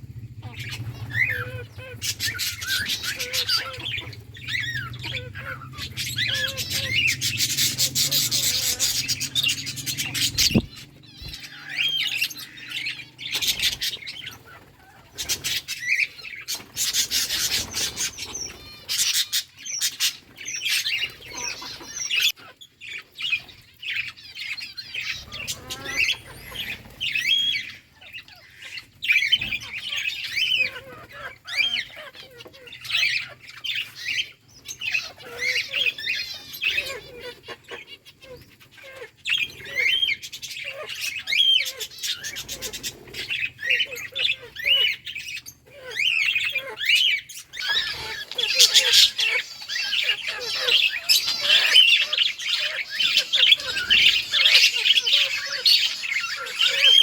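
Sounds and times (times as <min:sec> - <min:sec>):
wings fluttering: 0:00.0 - 0:21.9, 0:46.9 - 0:57.0
budgerigars chirping: 0:00.0 - 0:57.0.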